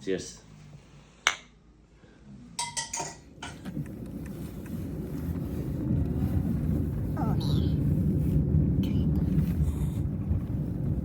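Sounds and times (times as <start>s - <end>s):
teacups and dishes clinking: 2.6s - 3.6s
low rumble: 3.2s - 11.0s.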